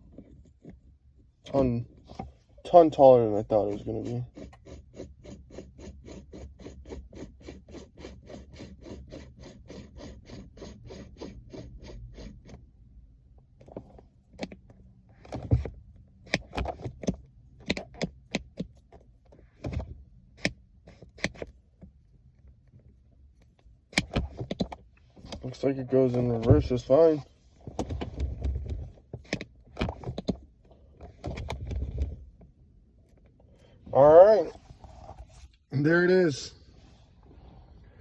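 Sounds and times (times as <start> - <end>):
gear shifter clunks: 13.5 - 35.6.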